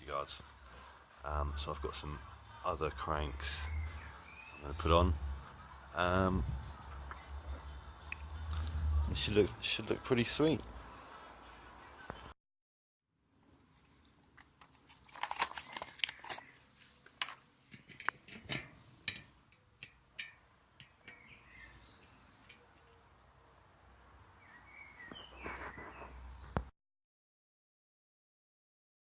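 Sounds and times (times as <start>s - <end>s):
clicks and knocks of bike parts: 17.0s - 21.3s
faint bird chirps: 21.0s - 23.2s, 24.4s - 26.7s.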